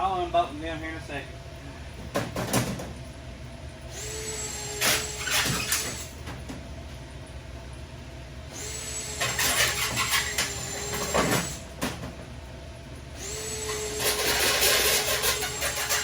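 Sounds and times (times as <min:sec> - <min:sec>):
drill bit grinding into sheet metal: 0:03.9 - 0:06.1, 0:08.6 - 0:11.6, 0:13.2 - 0:16.0
power drill whining: 0:03.9 - 0:06.1, 0:08.5 - 0:11.7, 0:13.2 - 0:16.0.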